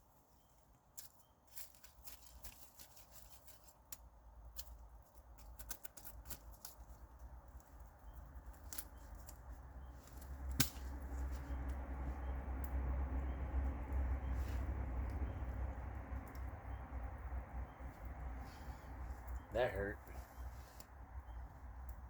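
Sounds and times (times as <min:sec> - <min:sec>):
campfire crackling and popping: 0:08.2 - 0:14.0, 0:15.0 - 0:18.3.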